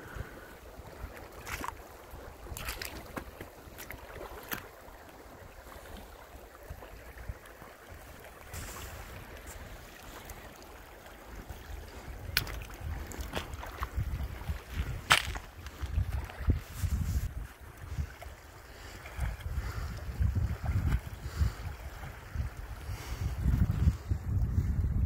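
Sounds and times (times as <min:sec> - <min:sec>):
wind rumbling on microphone: 0:06.3 - 0:25.0
short crunches: 0:14.9 - 0:15.8.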